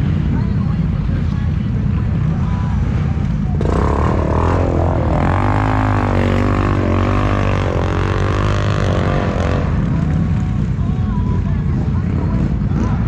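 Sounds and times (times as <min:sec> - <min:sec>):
atv engine revving: 0:02.8 - 0:10.8.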